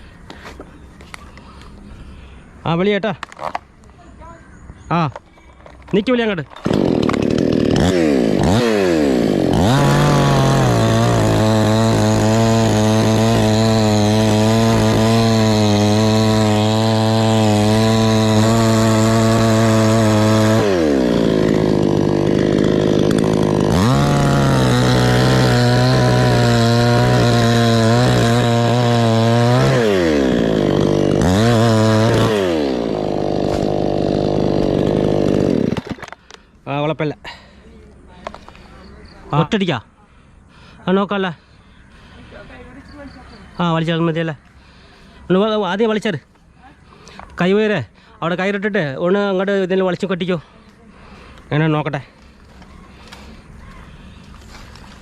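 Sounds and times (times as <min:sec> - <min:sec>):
chainsaw cutting wood: 0:05.7 - 0:36.4, 0:54.2 - 0:55.0.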